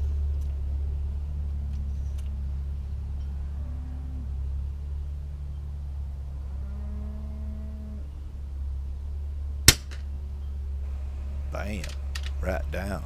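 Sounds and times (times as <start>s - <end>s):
faint drawn-out low tone: 10.9s - 13.0s
steady low rumble: 10.9s - 13.0s.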